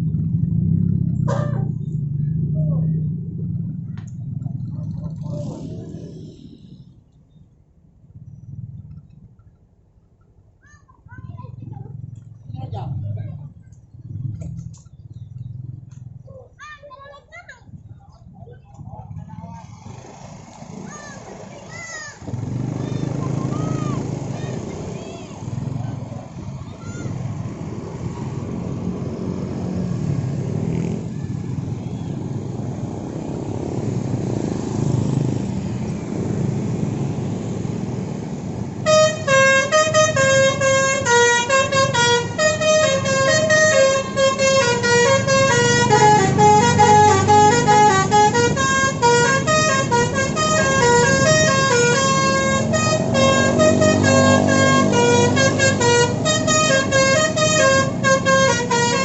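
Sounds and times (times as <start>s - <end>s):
bus engine rumbling: 0.0s - 59.0s
multi-tone bus horn melody: 38.8s - 59.0s.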